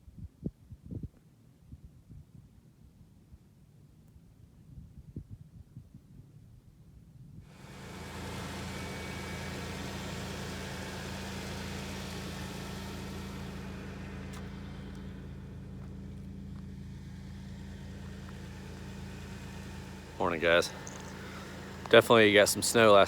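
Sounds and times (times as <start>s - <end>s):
car engine idling: 7.5s - 23.0s.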